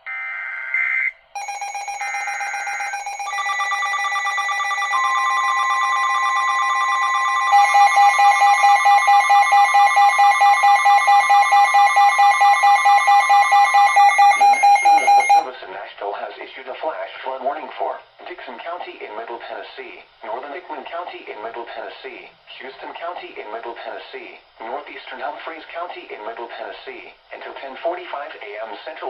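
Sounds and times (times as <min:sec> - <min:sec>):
steady alert tones: 0:00.8 - 0:15.5.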